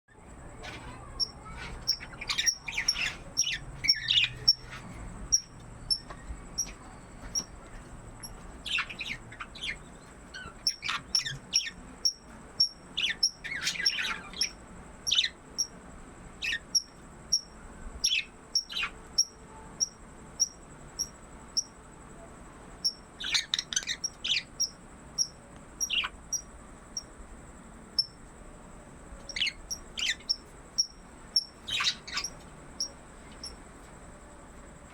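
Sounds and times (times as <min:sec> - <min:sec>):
budgerigars chirping and chattering: 0:00.6 - 0:15.4, 0:16.4 - 0:19.9, 0:22.8 - 0:27.1, 0:29.3 - 0:33.6.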